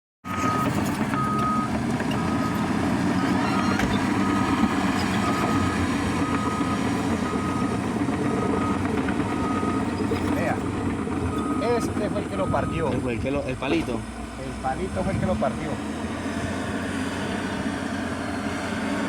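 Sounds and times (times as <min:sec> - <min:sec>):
reversing alarm beeps: 0:00.3 - 0:02.6, 0:03.2 - 0:10.6, 0:11.3 - 0:13.0
heavy machine engine running: 0:00.3 - 0:19.0.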